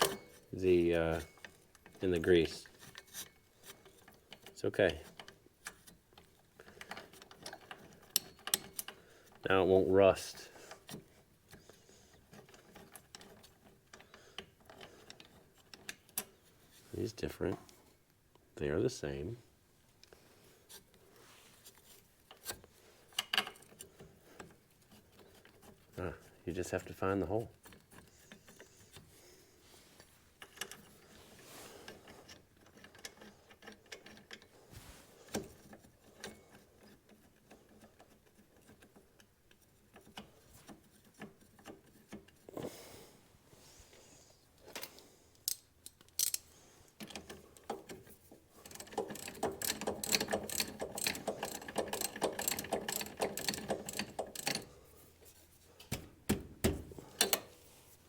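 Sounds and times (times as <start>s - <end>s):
metal clicks and clinks: 6.8s - 9.0s, 44.8s - 48.0s, 48.6s - 54.8s
ratchet wrench clicking: 45.5s - 46.4s, 48.6s - 54.7s.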